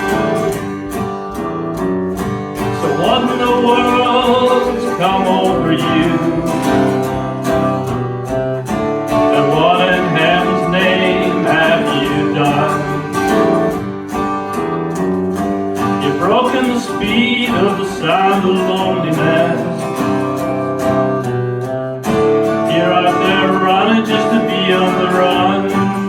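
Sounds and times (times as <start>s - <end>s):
acoustic guitar strumming: 0.0s - 26.0s
person singing: 2.6s - 8.0s, 9.1s - 13.8s, 15.9s - 20.2s, 22.5s - 26.0s.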